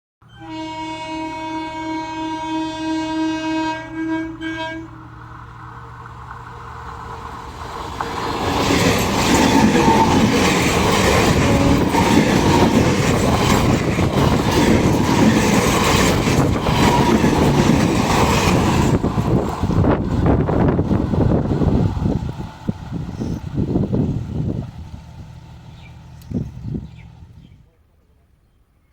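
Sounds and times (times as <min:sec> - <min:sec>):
train horn: 0:00.3 - 0:05.1, 0:11.1 - 0:12.8
train passing: 0:00.3 - 0:27.8
wheels clattering over rail joints: 0:05.2 - 0:23.0.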